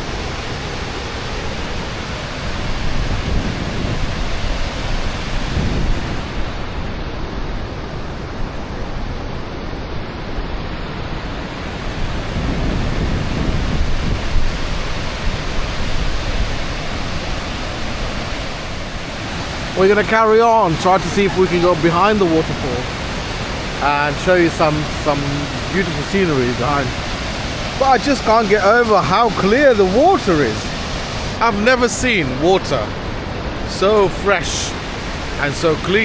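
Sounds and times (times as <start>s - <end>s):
waterfall roaring: 0.0s - 36.0s.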